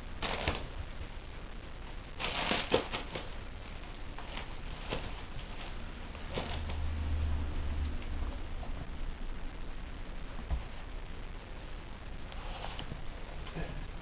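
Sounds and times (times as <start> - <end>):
rustling handling noise: 0.2 - 7.1, 12.2 - 13.7.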